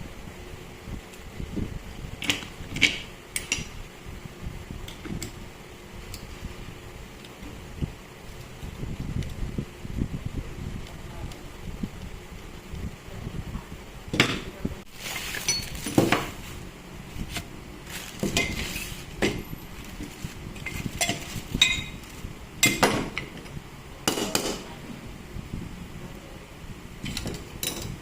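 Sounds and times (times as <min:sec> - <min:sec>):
metal tools clinking and knocking: 0:15.3 - 0:16.0.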